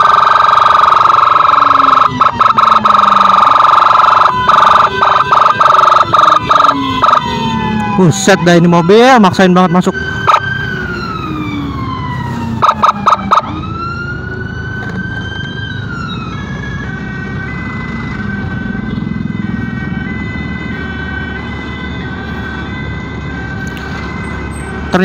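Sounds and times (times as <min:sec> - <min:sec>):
short loud siren blasts: 0:00.0 - 0:16.4
emergency siren wailing: 0:00.0 - 0:25.0
road and engine noise: 0:00.0 - 0:25.0.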